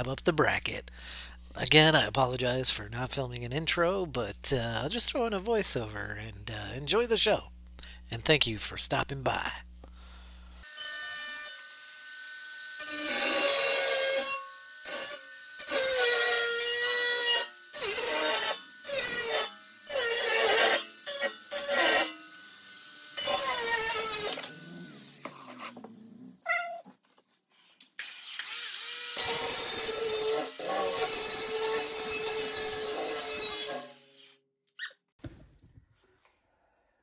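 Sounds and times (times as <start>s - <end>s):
power tool cutting metal: 10.6s - 25.8s, 28.0s - 34.4s.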